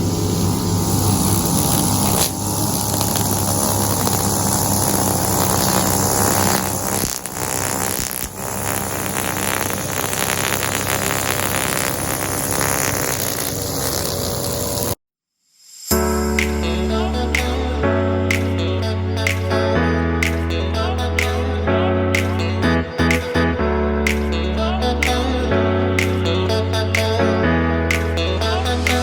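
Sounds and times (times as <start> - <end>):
lawn mower engine cutting grass: 0.0 - 15.0.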